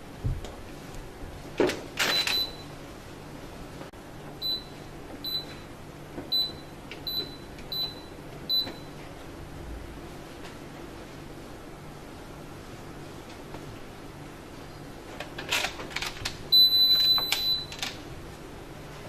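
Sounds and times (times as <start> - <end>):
washing machine buzzer beeps: 2.0 - 2.8, 4.4 - 5.7, 6.3 - 9.0, 16.5 - 17.8.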